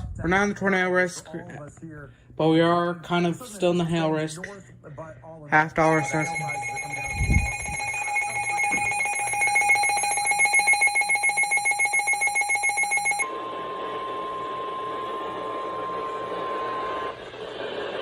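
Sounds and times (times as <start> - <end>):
radio alert alarm beeping: 5.8 - 13.2
steady warning alarm tone: 5.8 - 13.3.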